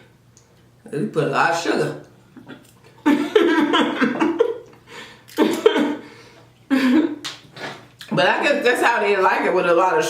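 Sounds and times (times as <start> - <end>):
person laughing: 3.0 - 6.0, 6.7 - 7.2.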